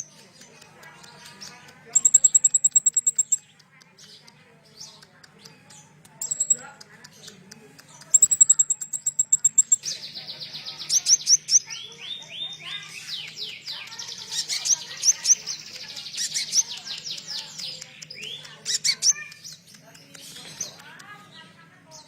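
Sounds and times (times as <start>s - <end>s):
songbird singing: 0.0s - 22.0s.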